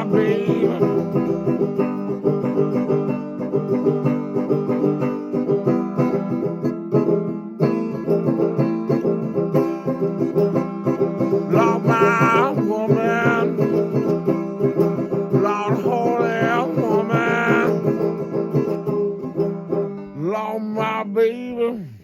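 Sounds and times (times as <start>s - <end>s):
banjo picking: 0.0s - 21.8s
acoustic guitar: 0.0s - 22.0s.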